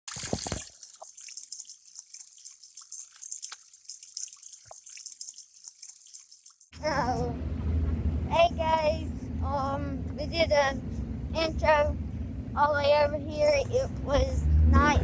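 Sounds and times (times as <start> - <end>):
water dripping: 0.1 - 6.8.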